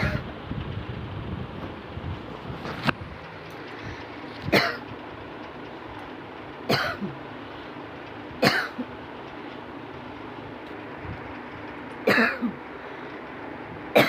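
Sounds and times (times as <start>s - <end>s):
person coughing: 4.5s - 4.8s, 6.7s - 7.2s, 8.4s - 8.8s, 12.0s - 12.6s.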